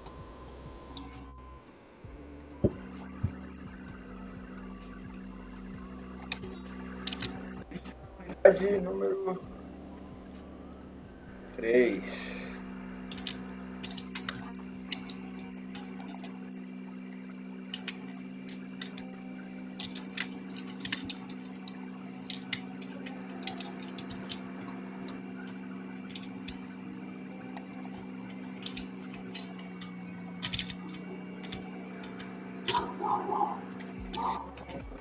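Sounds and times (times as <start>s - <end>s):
low electrical hum: 0.0s - 35.0s
faint clicks and ticks: 11.3s - 17.0s, 17.6s - 35.0s.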